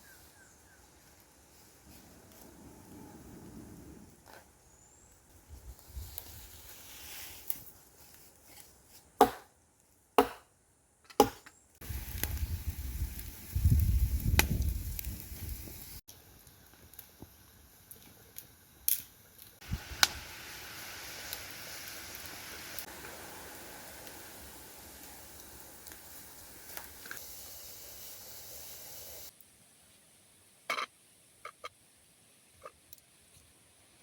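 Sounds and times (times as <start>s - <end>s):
blade chopping into wood: 9.2s - 9.5s, 10.2s - 10.5s, 11.1s - 11.4s.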